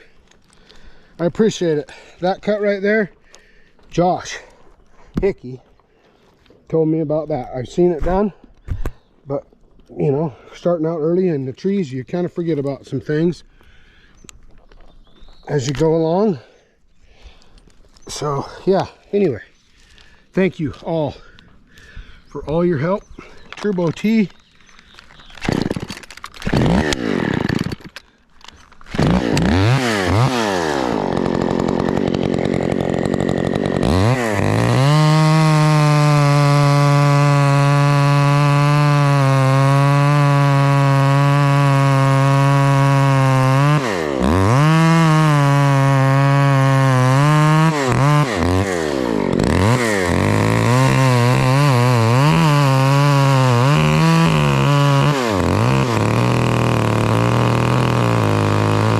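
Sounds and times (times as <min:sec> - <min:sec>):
chainsaw revving: 0:23.2 - 0:58.9.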